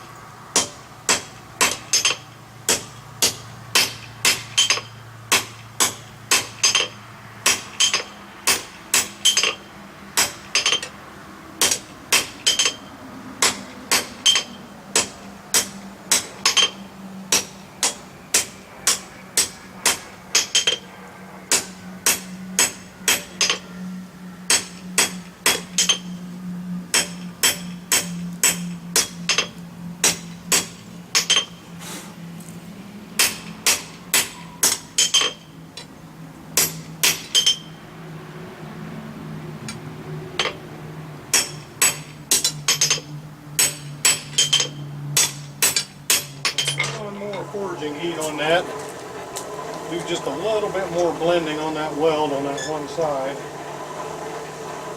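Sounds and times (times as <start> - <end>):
low steady hum: 0.0 - 54.9
hammer striking steel on anvil: 0.5 - 9.6, 10.2 - 10.9, 11.6 - 12.8, 13.4 - 20.9, 21.5 - 23.7, 24.5 - 26.1, 26.9 - 31.5, 33.2 - 35.5, 36.6 - 37.7, 41.3 - 48.4.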